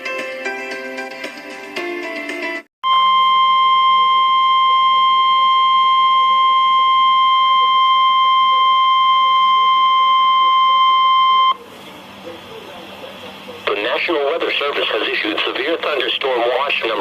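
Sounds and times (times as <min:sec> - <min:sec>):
steady piercing alarm tone: 0:02.9 - 0:11.6.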